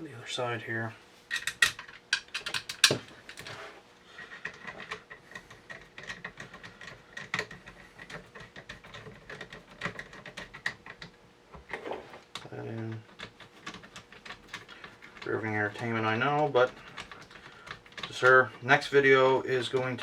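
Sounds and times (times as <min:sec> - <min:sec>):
small metal clicks of gun parts: 0:01.3 - 0:03.5.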